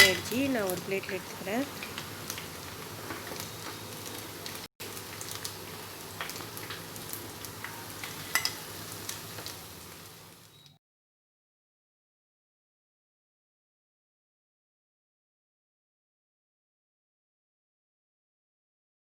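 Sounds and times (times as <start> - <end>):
food sizzling in hot oil: 0.0 - 10.8.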